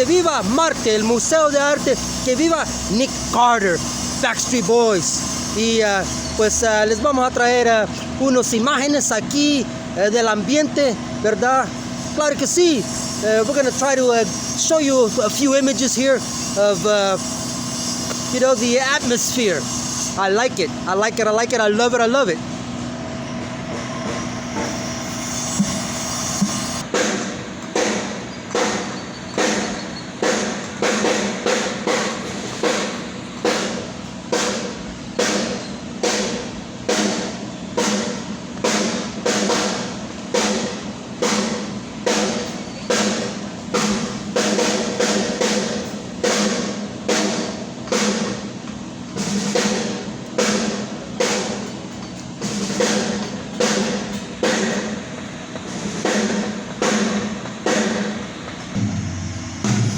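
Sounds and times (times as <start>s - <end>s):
drum hits: 55.9s - 59.9s
steady low hum: 58.1s - 59.9s.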